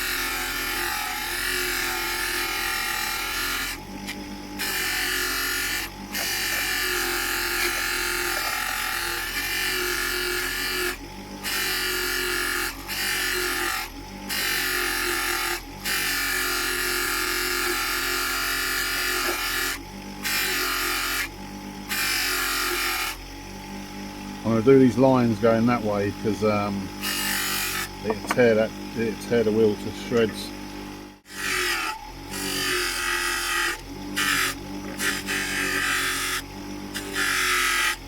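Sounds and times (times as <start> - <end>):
motor low hum: 3.7 - 11.5, 23.2 - 31.3.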